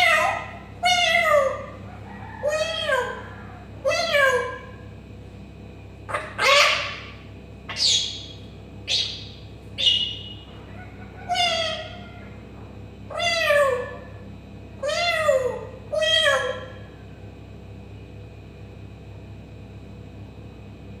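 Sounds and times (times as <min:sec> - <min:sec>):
parrot meowing: 0:00.0 - 0:04.9, 0:06.1 - 0:17.0.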